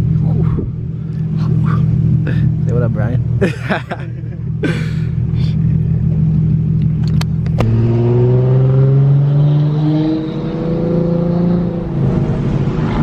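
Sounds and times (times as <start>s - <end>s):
car engine accelerating: 0.0s - 13.0s.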